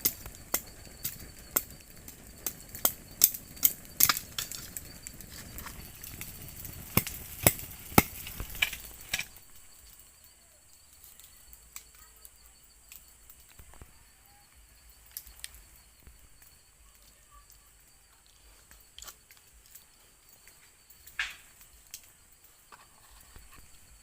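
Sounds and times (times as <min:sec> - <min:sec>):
crickets chirping: 0:00.0 - 0:24.0.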